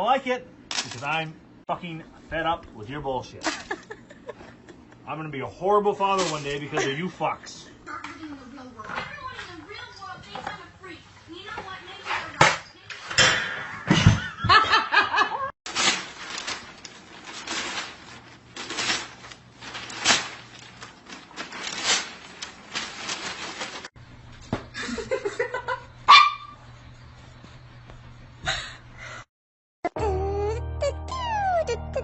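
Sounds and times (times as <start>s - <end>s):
person laughing: 3.4s - 5.0s, 6.6s - 7.2s, 24.8s - 25.8s, 29.9s - 32.0s.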